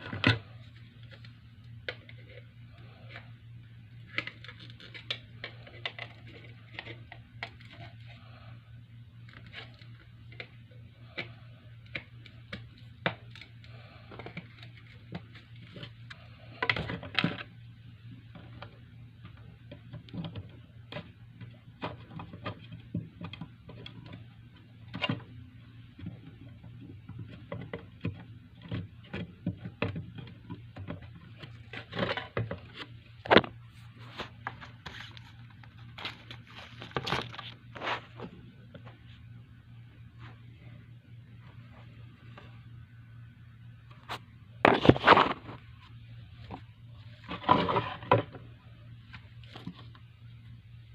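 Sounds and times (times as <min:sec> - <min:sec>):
hands handling plastic packaging: 0:00.0 - 0:08.4, 0:28.6 - 0:39.2
steady low hum: 0:00.0 - 0:50.9.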